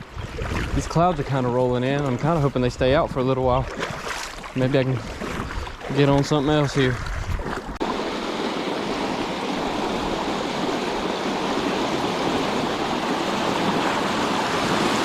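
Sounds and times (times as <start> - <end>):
river water rushing: 7.6 - 15.0.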